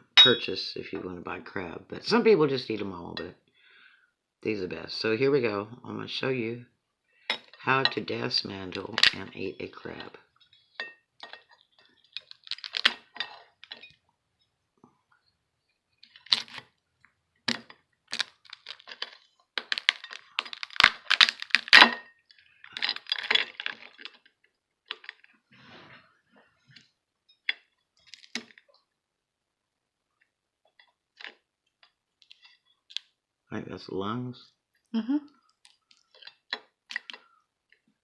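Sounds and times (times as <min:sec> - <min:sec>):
crab shell cracking: 0:11.2 - 0:13.9, 0:16.0 - 0:16.8, 0:17.5 - 0:25.3, 0:27.5 - 0:28.7, 0:30.7 - 0:33.2, 0:35.5 - 0:37.4.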